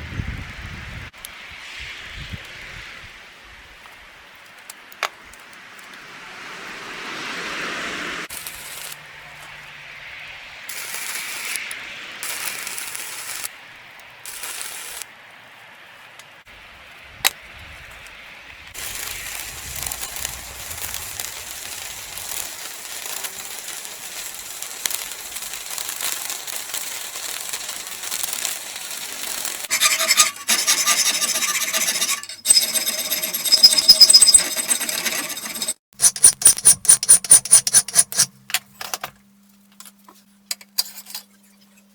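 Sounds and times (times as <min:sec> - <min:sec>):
abrasive grinding on steel: 0:27.3 - 0:38.3
sharp click: 0:36.0 - 0:38.3.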